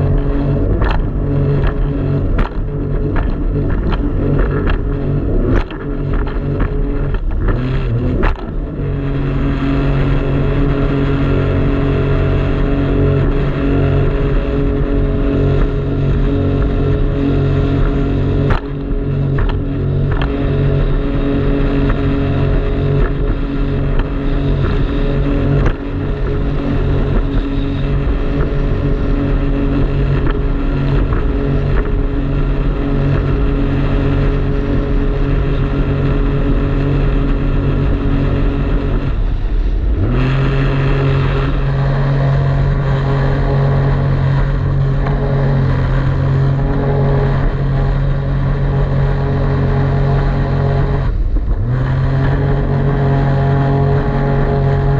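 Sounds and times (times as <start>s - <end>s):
jet ski engine running: 0.0s - 54.9s.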